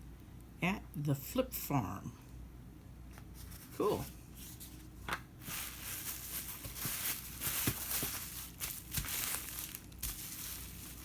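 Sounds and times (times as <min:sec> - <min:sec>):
packaging crinkling and rustling: 0:04.4 - 0:11.0.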